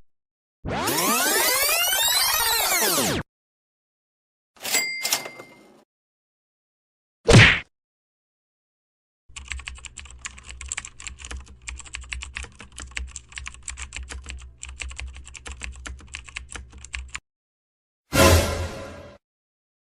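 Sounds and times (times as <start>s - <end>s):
computer keyboard typing: 9.3s - 17.2s.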